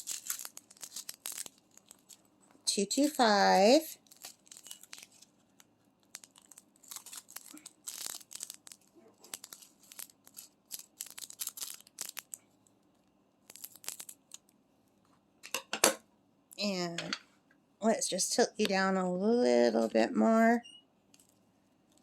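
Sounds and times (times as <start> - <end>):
plastic bag crinkling and tearing: 0.0 - 2.3, 3.0 - 12.4, 13.4 - 14.5.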